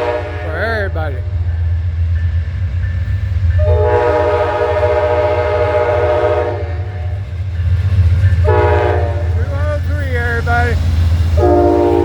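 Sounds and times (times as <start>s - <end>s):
locomotive horn blast: 0.0s - 1.3s, 3.6s - 7.2s, 8.4s - 9.6s, 11.4s - 12.0s.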